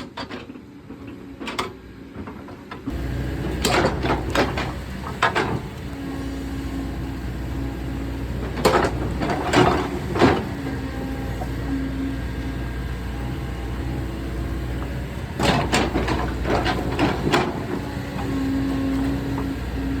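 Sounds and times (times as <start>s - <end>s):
excavator diesel engine running: 2.1s - 20.0s.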